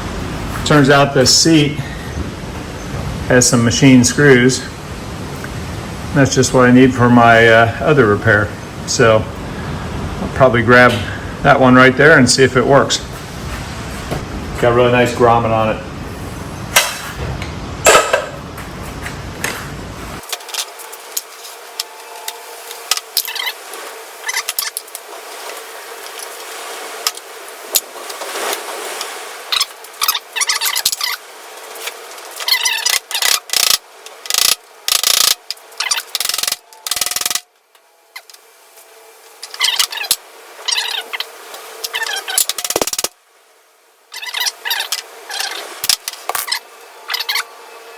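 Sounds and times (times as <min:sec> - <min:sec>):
ratchet clicking: 0:32.8 - 0:37.4.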